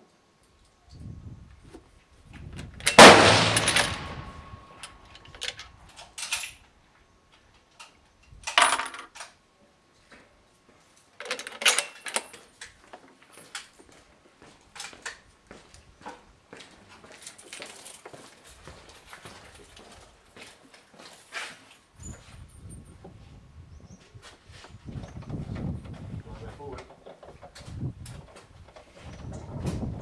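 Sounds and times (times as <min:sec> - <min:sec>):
rifle shot: 0:02.9 - 0:04.7.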